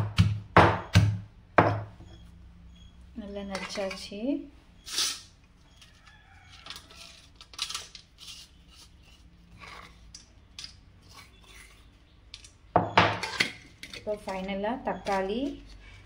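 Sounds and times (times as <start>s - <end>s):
utensils clicking and scraping: 3.5s - 4.1s, 4.8s - 12.6s, 13.2s - 16.0s.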